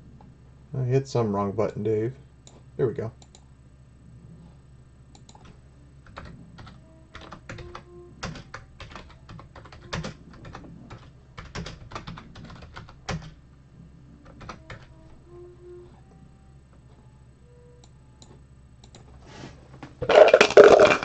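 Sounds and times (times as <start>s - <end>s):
computer keyboard typing: 5.1s - 13.4s, 14.2s - 14.9s.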